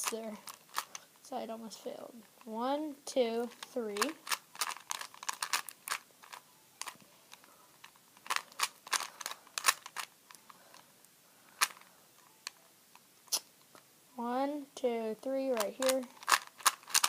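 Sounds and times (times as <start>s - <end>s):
puzzle cube clacking: 0.0s - 1.1s, 3.4s - 10.9s, 11.5s - 13.8s, 15.4s - 17.0s.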